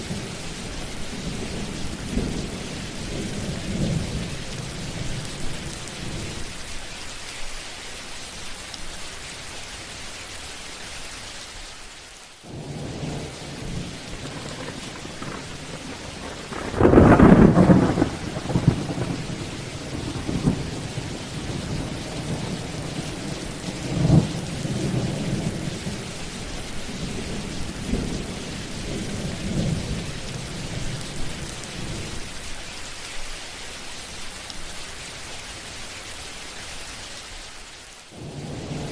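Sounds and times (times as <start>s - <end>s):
steady rain falling: 0.0s - 38.9s
loud thunderclap: 12.5s - 26.0s
rolling thunder: 12.5s - 26.1s.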